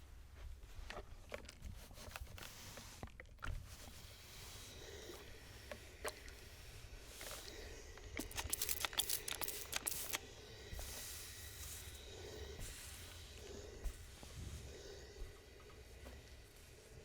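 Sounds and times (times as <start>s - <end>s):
steam iron rubbing and hissing: 3.9s - 17.0s
scattered clicks: 8.2s - 10.2s.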